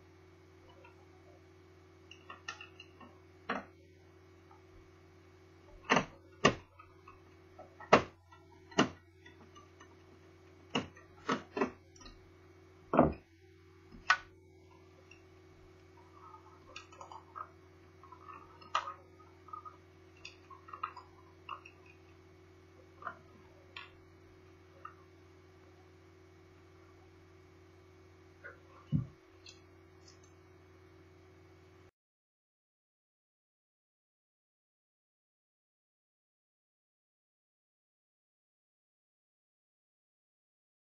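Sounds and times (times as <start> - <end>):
faint steady hum: 0.0 - 31.9
laptop parts clicking and knocking: 5.8 - 10.0, 10.7 - 12.2.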